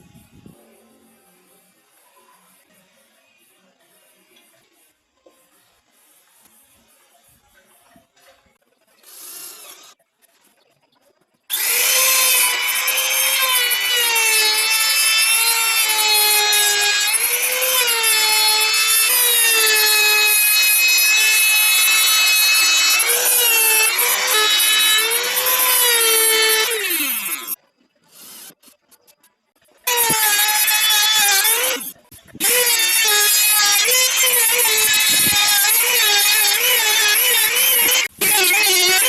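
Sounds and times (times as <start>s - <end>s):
trim router motor whine: 11.5s - 27.6s, 29.9s - 39.0s.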